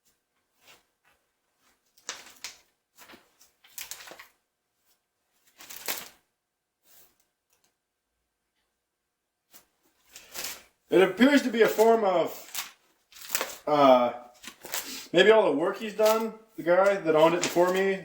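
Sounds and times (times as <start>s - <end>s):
book pages rustling: 0.1s - 7.8s, 9.5s - 18.0s.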